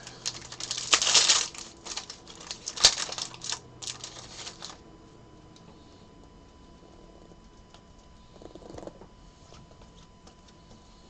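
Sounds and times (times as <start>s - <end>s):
foil wrapper crinkling: 0.0s - 4.8s.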